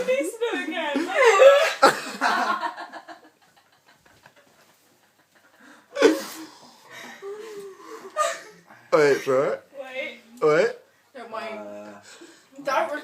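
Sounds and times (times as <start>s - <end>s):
laughter: 1.0s - 6.2s.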